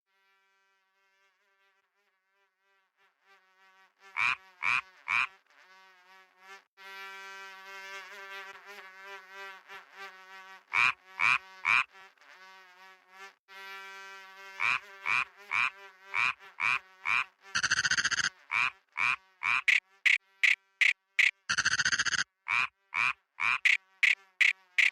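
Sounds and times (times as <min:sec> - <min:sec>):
buzzing frog chorus: 0:04.2 - 0:05.3, 0:10.7 - 0:11.9, 0:14.6 - 0:24.9
frogs croaking: 0:17.1 - 0:24.9.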